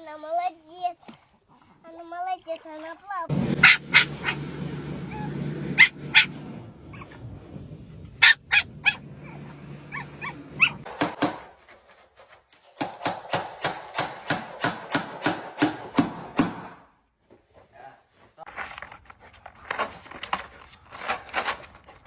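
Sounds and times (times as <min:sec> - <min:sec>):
dog barking and yipping: 0:03.6 - 0:07.3, 0:08.1 - 0:10.9.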